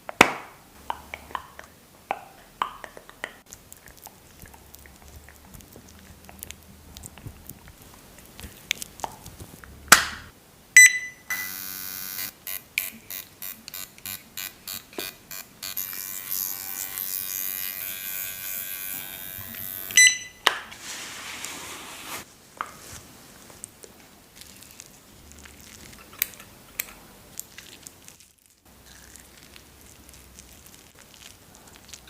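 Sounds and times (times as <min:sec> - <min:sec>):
device beep: 0:10.8 - 0:12.3, 0:19.9 - 0:20.4
vibrating motor buzzing: 0:14.1 - 0:20.0.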